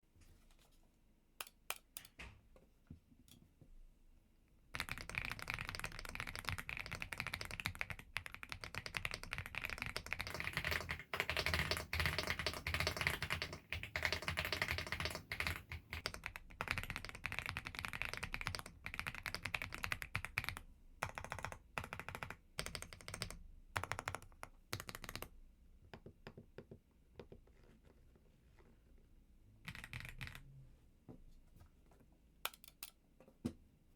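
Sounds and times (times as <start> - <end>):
mechanical keyboard typing: 4.8 - 25.3, 29.7 - 30.5.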